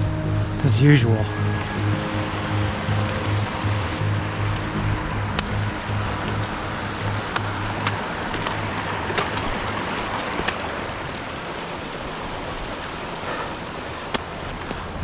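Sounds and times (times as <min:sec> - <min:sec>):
low music beat: 0:00.0 - 0:10.3
steady rushing outdoor noise: 0:00.0 - 0:15.0.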